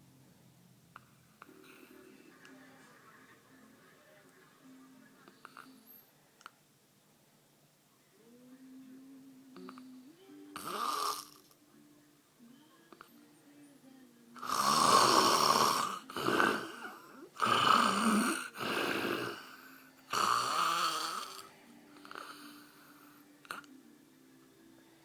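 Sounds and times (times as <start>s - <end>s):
man snoring loudly: 10.6s - 11.4s, 14.4s - 23.6s.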